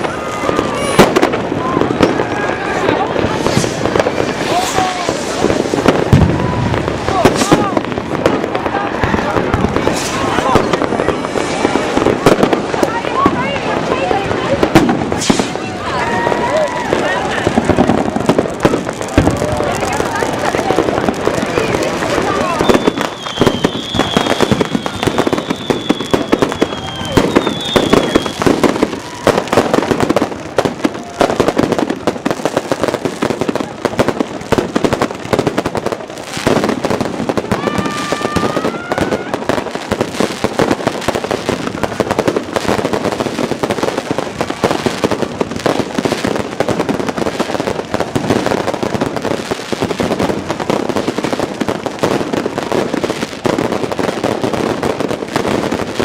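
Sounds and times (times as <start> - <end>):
whistling rockets: 0.0 - 8.4, 9.0 - 12.6, 14.6 - 18.0, 21.4 - 31.6
firecracker crackling: 0.0 - 56.0
fireworks bangs: 0.0 - 56.0.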